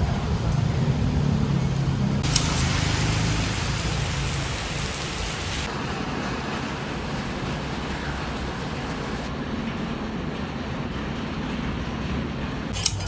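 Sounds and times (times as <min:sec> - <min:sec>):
vehicle engine rumble: 0:00.0 - 0:09.5
rushing hiss: 0:02.2 - 0:09.3.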